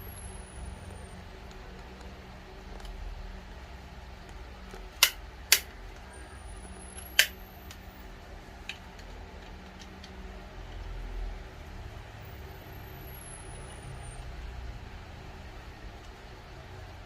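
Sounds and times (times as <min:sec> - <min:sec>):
plastic clicks and snaps: 0:04.2 - 0:06.0, 0:07.0 - 0:07.9, 0:08.6 - 0:10.2.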